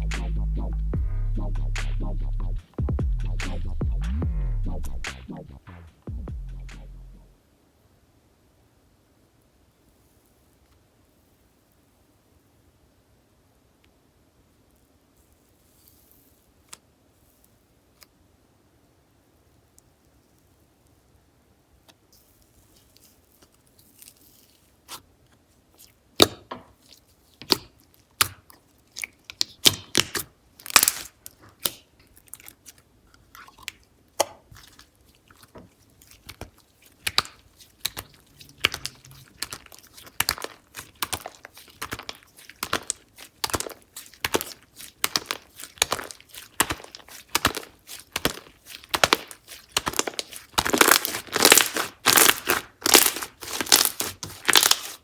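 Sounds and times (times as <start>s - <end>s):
slime crackling and popping: 22.5s - 25.0s, 25.8s - 55.0s.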